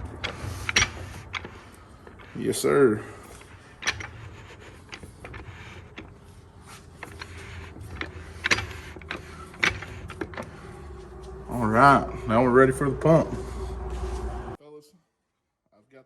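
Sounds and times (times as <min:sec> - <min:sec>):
metallic clicks and knocks of parts: 0:00.0 - 0:02.5, 0:03.2 - 0:11.5
faint steady hum: 0:00.0 - 0:14.6.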